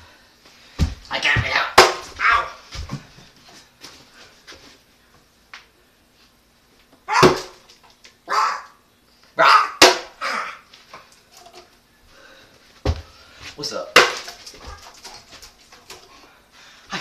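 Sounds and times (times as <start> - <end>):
dog barking: 8.3 - 8.8, 9.4 - 10.6.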